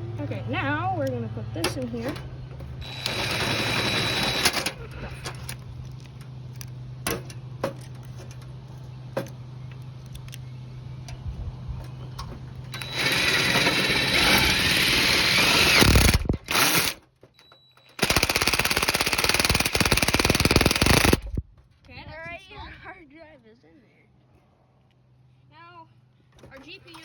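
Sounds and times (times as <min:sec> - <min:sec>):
power drill driving screws: 0:02.8 - 0:04.8, 0:12.7 - 0:17.0, 0:18.0 - 0:21.2.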